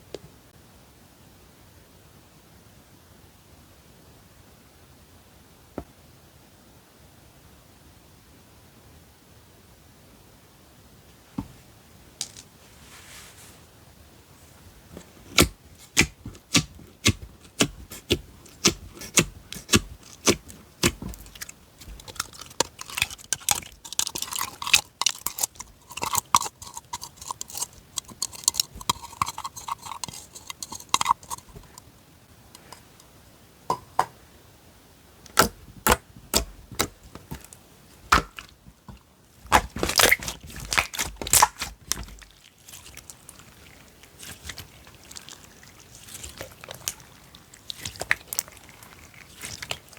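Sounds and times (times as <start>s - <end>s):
slime clicking and squishing: 15.0s - 31.8s, 35.3s - 49.9s.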